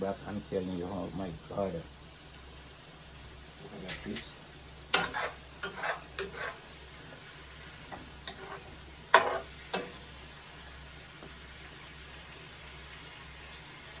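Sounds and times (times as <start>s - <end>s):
utensil knocking and scraping pot: 4.9s - 6.7s, 7.9s - 10.0s.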